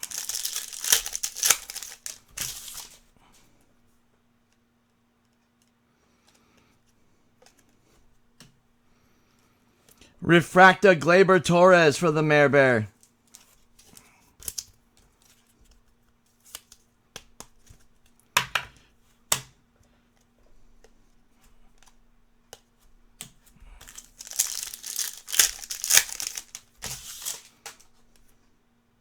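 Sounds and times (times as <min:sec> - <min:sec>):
foil wrapper crinkling and tearing: 0:00.0 - 0:02.9, 0:23.9 - 0:27.5.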